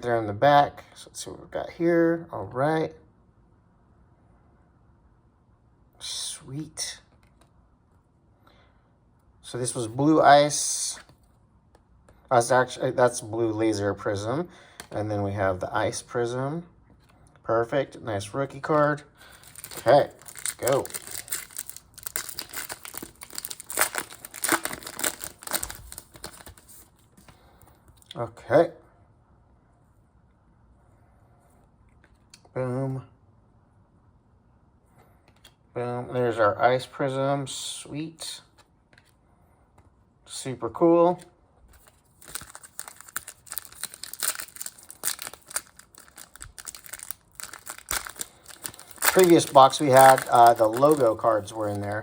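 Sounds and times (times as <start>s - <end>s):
wrapper tearing and crinkling: 19.3s - 26.8s, 41.8s - 52.0s.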